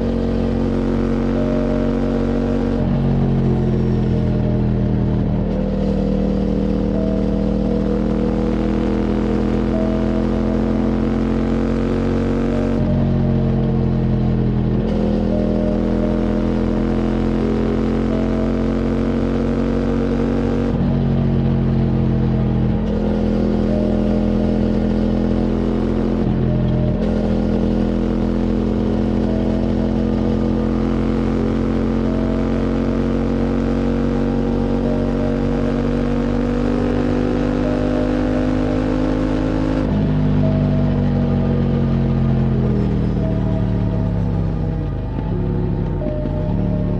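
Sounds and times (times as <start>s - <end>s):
motorcycle engine revving under load: 0.0s - 46.9s.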